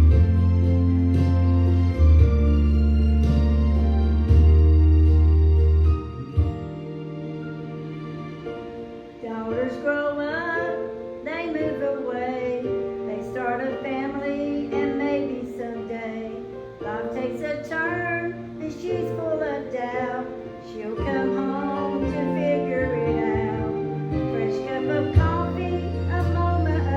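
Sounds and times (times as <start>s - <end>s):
instrumental accompaniment chords: 0.0s - 26.9s
person singing gospel song: 11.3s - 26.9s.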